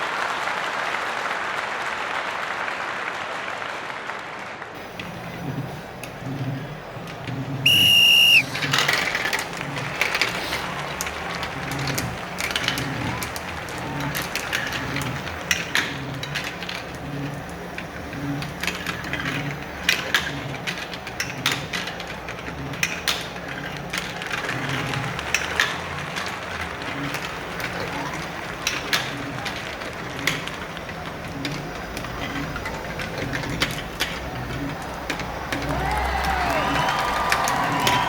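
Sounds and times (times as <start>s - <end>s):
shrill whistle blast: 7.6s - 8.6s.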